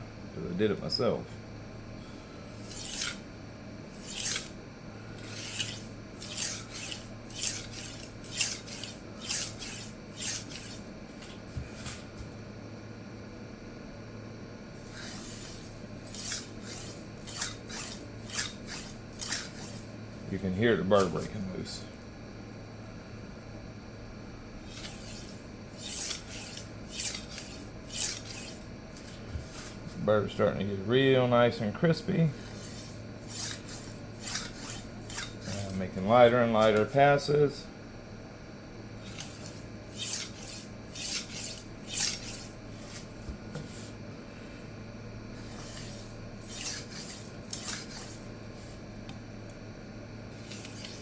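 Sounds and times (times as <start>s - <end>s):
knife scraping on sharpening stone: 2.6s - 3.2s, 3.9s - 4.5s, 5.2s - 10.8s, 14.8s - 19.8s, 24.7s - 28.6s, 32.4s - 35.7s, 39.1s - 43.0s, 45.4s - 48.2s.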